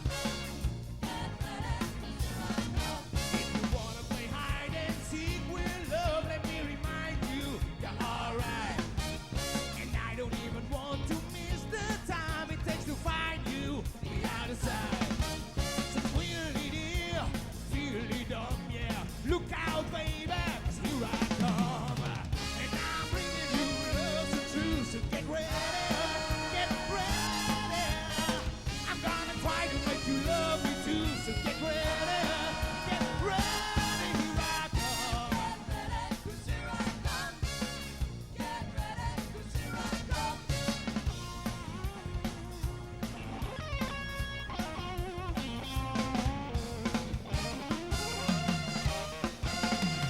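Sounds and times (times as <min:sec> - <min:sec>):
live soul band playing: 0:00.0 - 0:50.0
person singing: 0:16.2 - 0:37.7.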